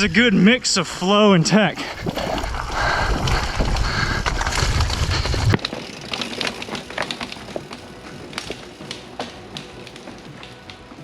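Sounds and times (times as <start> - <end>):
bike tyre rumble: 1.7 - 11.0
bike clicking and rattling: 1.8 - 11.0
wind on microphone: 1.9 - 5.6.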